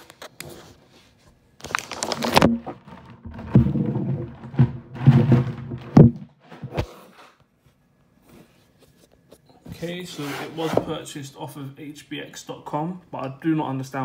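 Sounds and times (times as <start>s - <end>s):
paper wrapping tearing and rustling: 1.6s - 3.6s
handling knocks: 2.5s - 6.9s.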